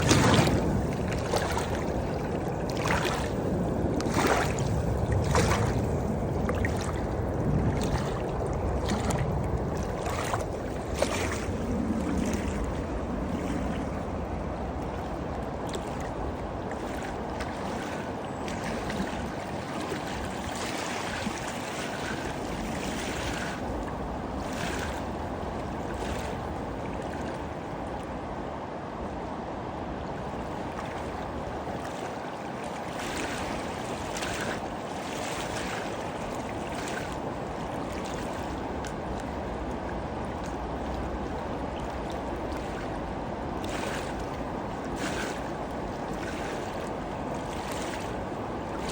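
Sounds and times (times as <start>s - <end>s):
water splashing: 0.0s - 14.2s
water rushing: 0.0s - 28.6s.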